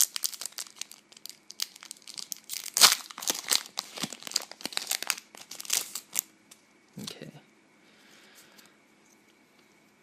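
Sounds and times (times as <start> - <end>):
foil wrapper crinkling and tearing: 0.0 - 6.3.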